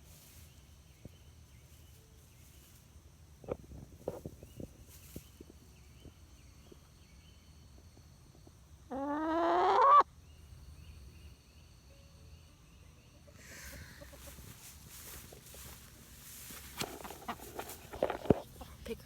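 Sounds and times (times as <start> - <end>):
chicken squawk: 8.9 - 10.1.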